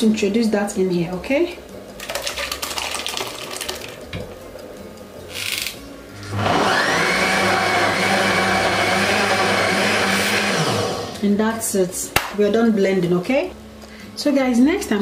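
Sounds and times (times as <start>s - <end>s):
kitchen blender running: 6.2s - 11.2s.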